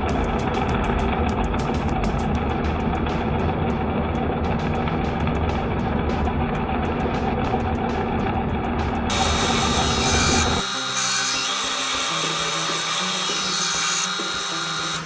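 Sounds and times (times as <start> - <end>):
power tool cutting wood: 9.1 - 15.0.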